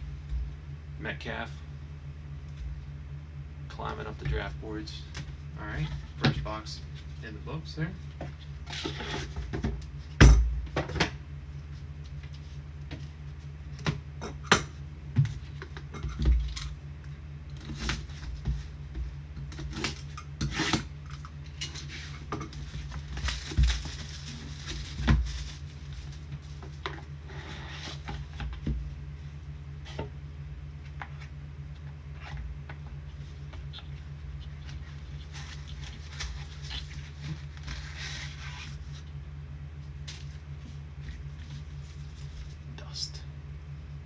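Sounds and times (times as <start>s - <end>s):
steady low hum: 0.0s - 44.0s
rustling and scraping: 8.0s - 10.2s, 17.5s - 30.2s, 30.8s - 39.2s, 39.8s - 42.7s.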